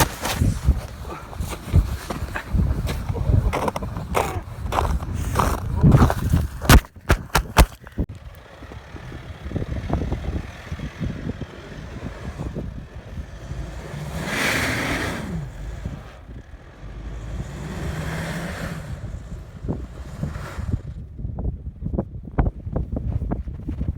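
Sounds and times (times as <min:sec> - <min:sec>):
sharp knocks: 0:06.0 - 0:08.0
engine revving: 0:08.2 - 0:21.0.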